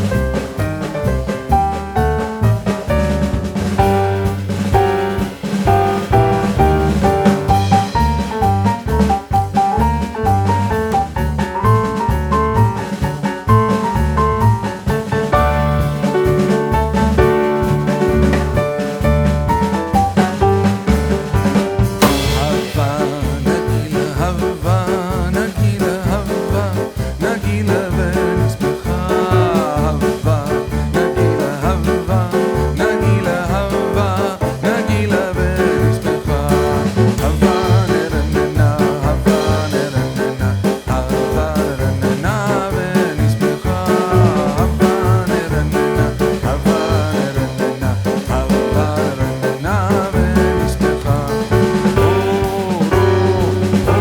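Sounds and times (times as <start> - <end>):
music with steady beat: 0.0 - 54.0
person singing: 22.0 - 54.0.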